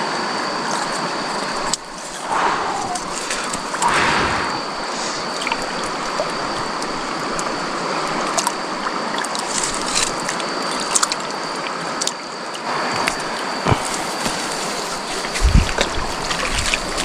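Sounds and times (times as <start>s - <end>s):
thin high tone: 1.4s - 7.7s
small clicks and splashes: 5.4s - 13.4s, 15.1s - 17.0s.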